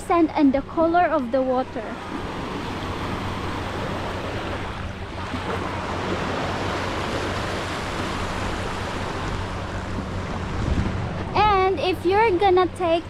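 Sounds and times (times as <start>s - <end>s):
wind on microphone: 1.4s - 13.0s
surf washing onto beach: 2.0s - 11.4s.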